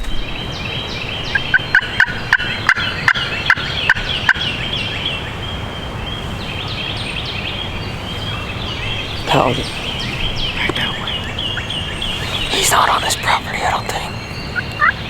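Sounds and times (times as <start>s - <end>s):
songbirds chirping: 0.0s - 15.0s
wind noise: 0.0s - 15.0s
turkey yelping: 1.3s - 4.6s, 8.2s - 12.6s, 14.5s - 15.0s.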